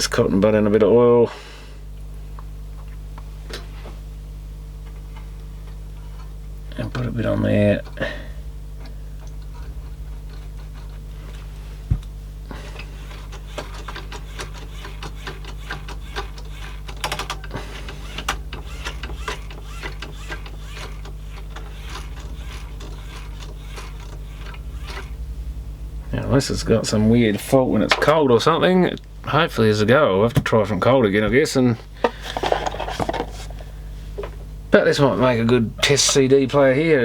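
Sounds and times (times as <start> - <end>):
low electrical hum: 0.0 - 37.0
clicks and scratchy rubbing: 12.8 - 25.6, 31.8 - 33.7.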